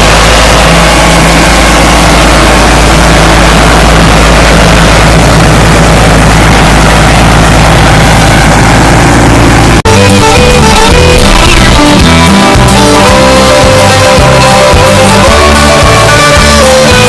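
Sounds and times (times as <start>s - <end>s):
tractor engine running: 0.0s - 17.0s.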